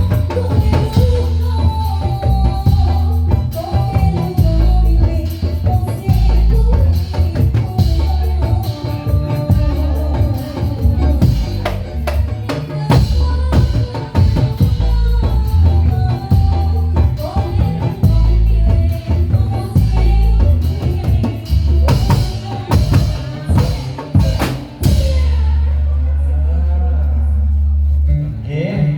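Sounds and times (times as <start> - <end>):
heavy bass drum: 0.0 - 28.4
percussion ensemble: 0.0 - 28.9.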